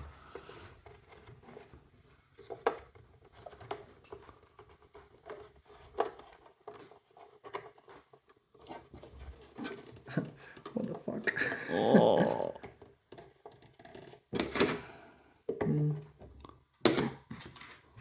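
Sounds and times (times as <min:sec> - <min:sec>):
scraping of metal and plastic: 0:00.1 - 0:10.7, 0:12.6 - 0:14.8.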